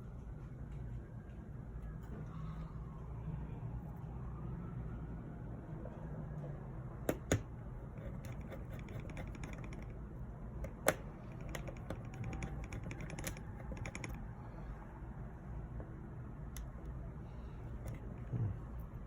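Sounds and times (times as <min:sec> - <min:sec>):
small tools clicking on phone parts: 0:07.1 - 0:10.0, 0:10.6 - 0:14.3, 0:17.7 - 0:18.1.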